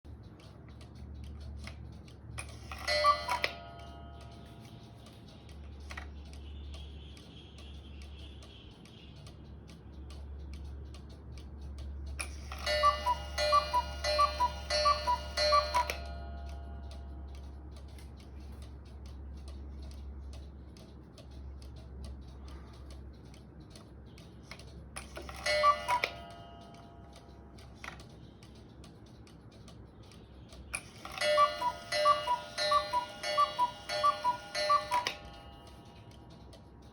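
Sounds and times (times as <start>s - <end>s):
clock ticking: 0.1s - 36.9s
two-note cuckoo call: 12.5s - 16.6s, 25.4s - 26.4s, 31.1s - 36.0s.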